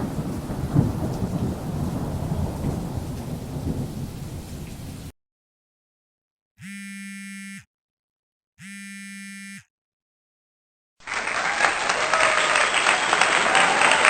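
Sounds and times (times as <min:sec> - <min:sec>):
buzzy electronic buzzer tones: 0:06.6 - 0:07.7, 0:08.6 - 0:09.7
applause: 0:11.0 - 0:14.0.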